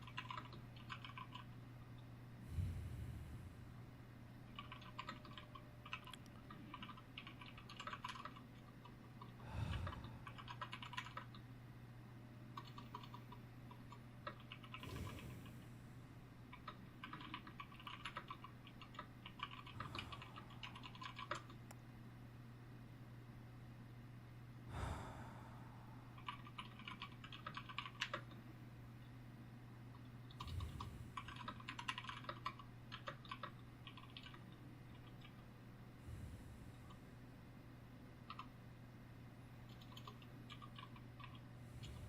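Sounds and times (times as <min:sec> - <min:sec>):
keyboard typing: 0:00.0 - 0:01.6, 0:04.5 - 0:11.4, 0:12.5 - 0:15.3, 0:16.5 - 0:21.7, 0:26.1 - 0:28.4, 0:30.3 - 0:35.4, 0:38.2 - 0:38.6, 0:39.6 - 0:42.0
steady low hum: 0:00.0 - 0:42.0
soft breaths: 0:02.3 - 0:04.2, 0:09.2 - 0:10.8, 0:14.6 - 0:16.4, 0:19.5 - 0:21.7, 0:24.6 - 0:26.5, 0:30.3 - 0:31.8, 0:35.8 - 0:37.3, 0:41.4 - 0:42.0.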